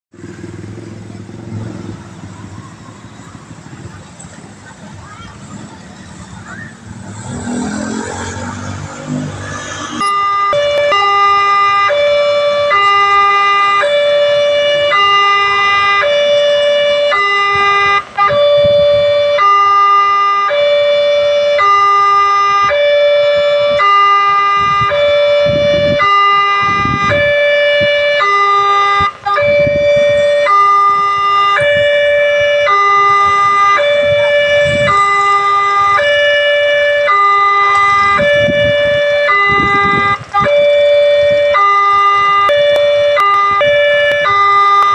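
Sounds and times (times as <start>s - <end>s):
level crossing two-tone alarm: 10.0s - 44.9s.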